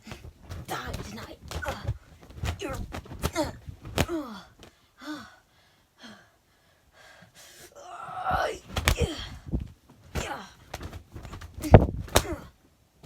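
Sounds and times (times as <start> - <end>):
sharp smacks: 0.1 - 4.7, 8.7 - 9.3, 10.1 - 12.5
person gasping and crying out: 7.7 - 9.6.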